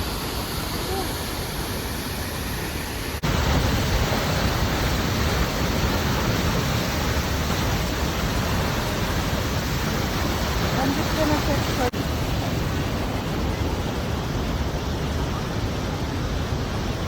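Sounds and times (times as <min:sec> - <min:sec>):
rushing water of waterfall: 0:00.0 - 0:17.0.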